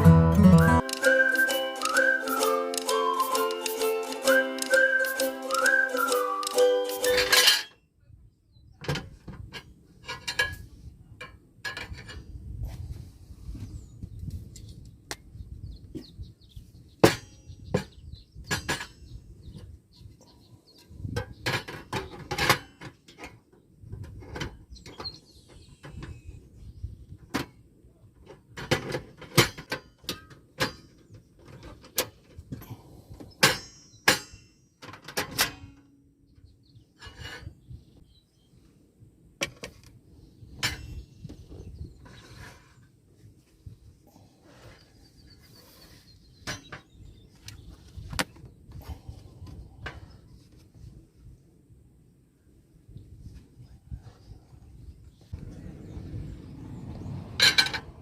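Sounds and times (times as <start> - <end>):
low rumble: 55.3 - 58.0.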